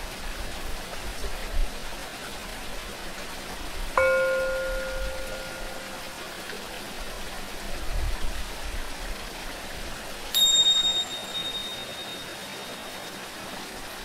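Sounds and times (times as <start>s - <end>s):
running water: 0.0s - 14.0s
singing bowl ringing: 4.0s - 6.4s, 10.4s - 13.4s
tingsha high ring: 4.0s - 6.4s, 10.4s - 13.5s.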